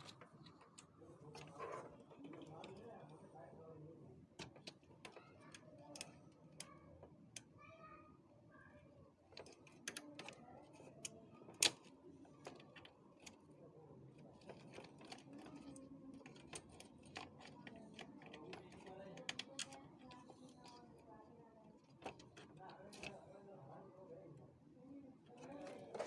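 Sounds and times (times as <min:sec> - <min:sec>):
plastic and metal parts clicking: 0:04.4 - 0:07.5, 0:09.3 - 0:21.1, 0:21.8 - 0:23.4, 0:25.3 - 0:26.0.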